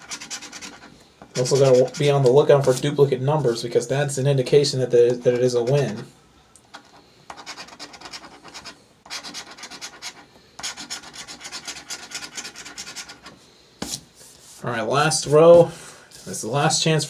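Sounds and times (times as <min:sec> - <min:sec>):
lottery ticket being scratched: 0:00.0 - 0:02.9, 0:06.7 - 0:13.3.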